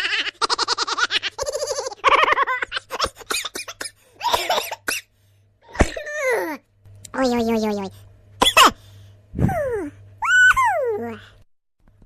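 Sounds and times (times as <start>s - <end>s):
comic laugh-like vocal chatter: 0.0s - 3.6s.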